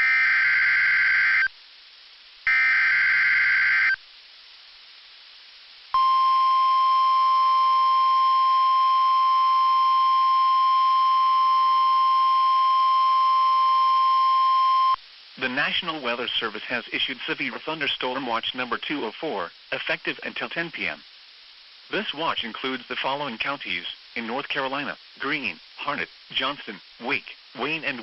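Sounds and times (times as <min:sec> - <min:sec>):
shrill digital data bursts: 0:02.5 - 0:04.0.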